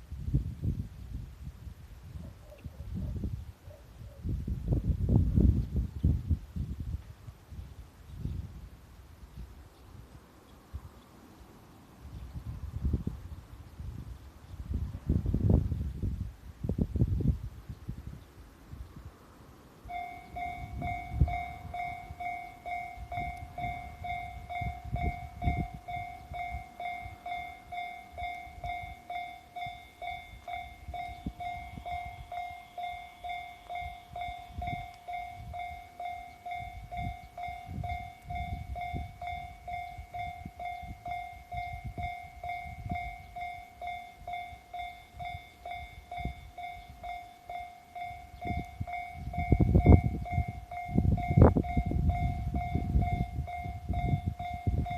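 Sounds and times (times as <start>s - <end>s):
level-crossing warning bell: 19.8s - 54.9s.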